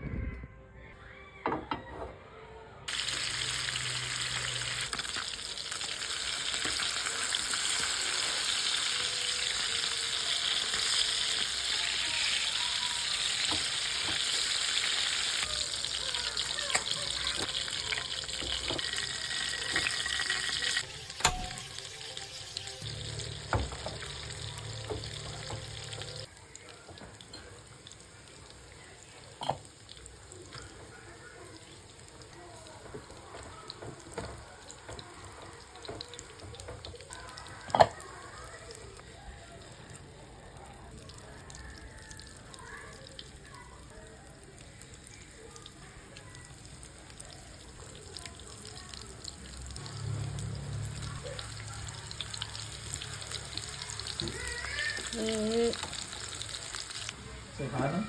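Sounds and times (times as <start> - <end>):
water tap running: 2.9 - 26.3, 48.0 - 58.0
utensils knocking: 19.7 - 21.8.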